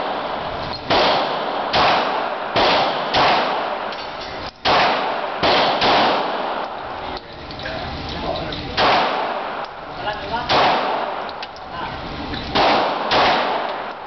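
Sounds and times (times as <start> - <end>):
gunshots echoing: 0.0 - 7.0, 8.7 - 11.5, 12.5 - 14.0.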